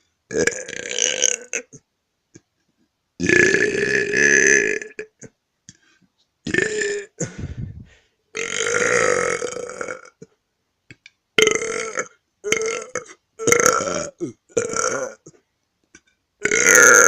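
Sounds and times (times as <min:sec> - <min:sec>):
boy burping: 0:00.3 - 0:01.8, 0:03.2 - 0:05.4, 0:06.5 - 0:10.3, 0:11.4 - 0:15.4, 0:16.4 - 0:17.0.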